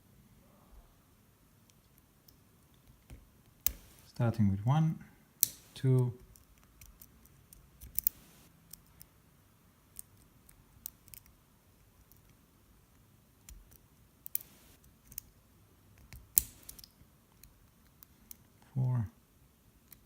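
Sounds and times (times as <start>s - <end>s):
lock pick clicking in padlock: 6.3s - 8.9s.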